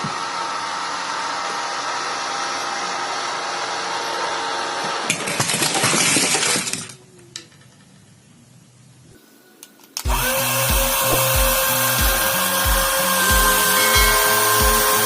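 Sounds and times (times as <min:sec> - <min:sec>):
small electric motors whirring: 0:10.0 - 0:15.0.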